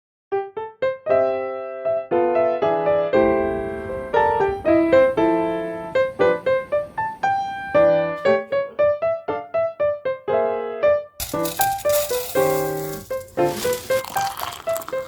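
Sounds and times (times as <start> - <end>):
solo piano music: 0.3 - 15.0.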